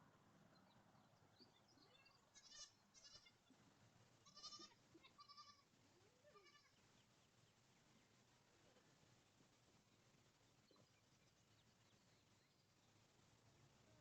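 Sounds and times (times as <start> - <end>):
goats bleating faintly: 2.3 - 3.5, 4.2 - 6.8.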